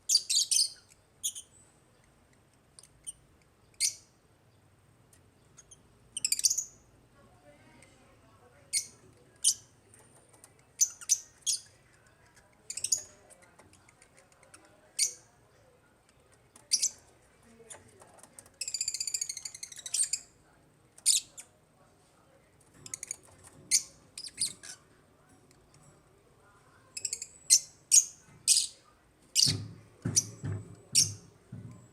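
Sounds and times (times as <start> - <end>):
lovebirds chirping: 0.0 - 6.9, 10.4 - 15.4, 16.5 - 17.8, 18.6 - 20.4, 22.8 - 24.8, 26.9 - 31.7
lovebird rapid chattering call: 5.6 - 6.8, 18.6 - 20.3.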